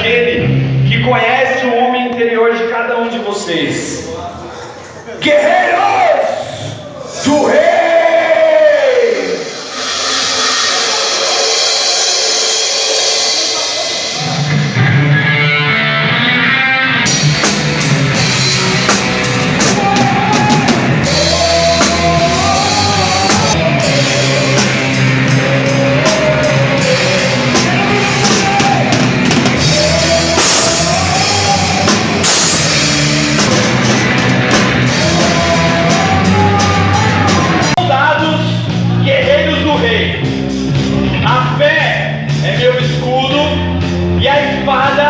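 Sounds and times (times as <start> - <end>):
drum kit and cymbals: 6.6 - 45.0
live rock band playing: 9.3 - 45.0.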